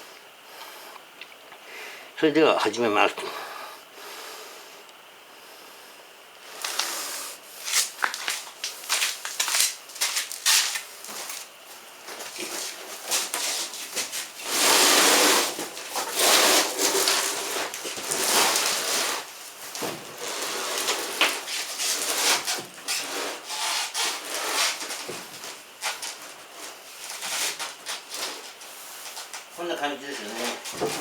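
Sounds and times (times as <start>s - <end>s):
wood scraping and rubbing: 12.1s - 29.4s.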